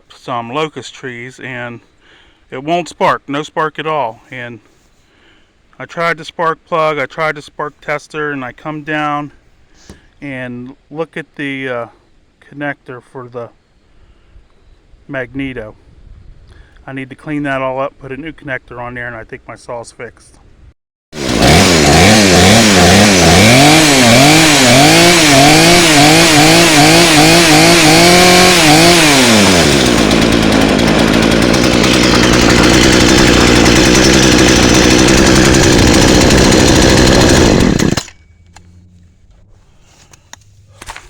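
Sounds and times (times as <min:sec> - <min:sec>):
chainsaw revving and idling: 0:21.2 - 0:38.2.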